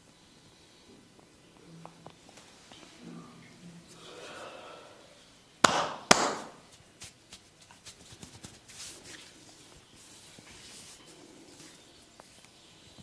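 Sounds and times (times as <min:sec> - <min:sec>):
sharp smacks on head: 0:05.6 - 0:06.6.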